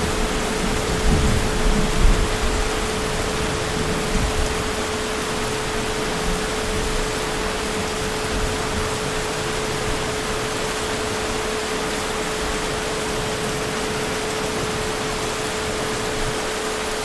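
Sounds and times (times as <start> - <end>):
heavy rain hissing: 0.0 - 17.0.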